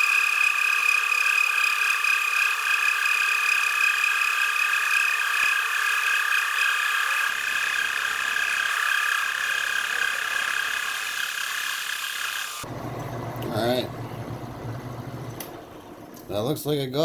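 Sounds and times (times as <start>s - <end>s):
metal lathe high whine: 0.0s - 16.2s.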